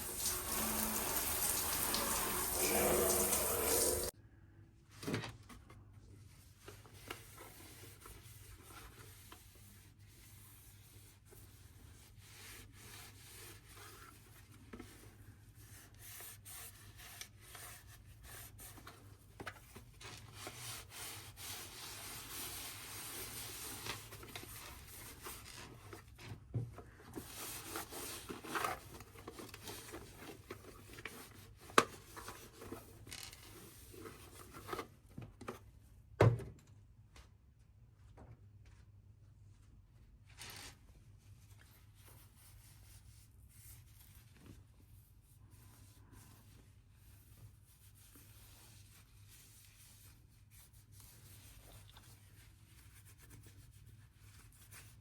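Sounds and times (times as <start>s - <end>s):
hand rubbing and scrubbing: 0.0s - 4.1s.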